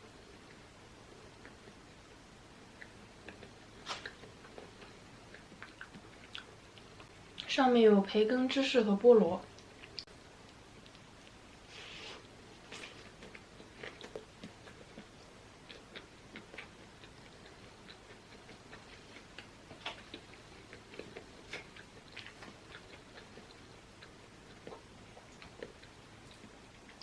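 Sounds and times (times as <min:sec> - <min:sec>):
person chewing soft bread: 0:00.2 - 0:07.5, 0:09.5 - 0:27.0
mouth clicks and smacks: 0:02.7 - 0:07.5, 0:13.0 - 0:27.0.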